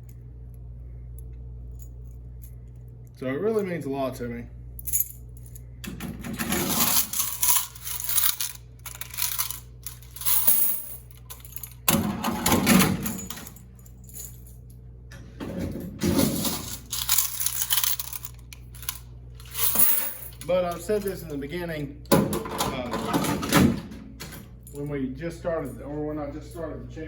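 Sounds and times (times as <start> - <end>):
coins rattling and pouring: 6.3 - 11.8, 16.0 - 20.4
person talking: 24.7 - 27.0.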